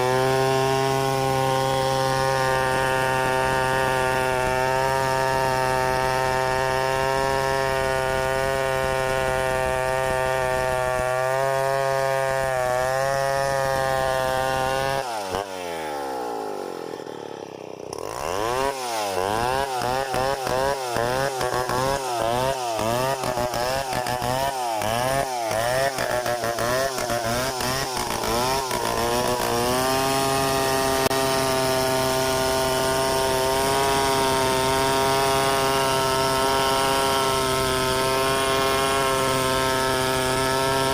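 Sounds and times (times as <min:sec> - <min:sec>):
chainsaw revving: 0:00.0 - 0:40.9.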